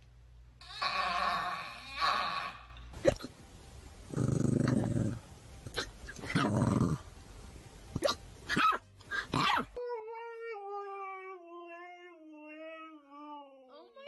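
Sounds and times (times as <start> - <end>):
dog growling: 4.1 - 7.1
dog barking: 9.4 - 9.7.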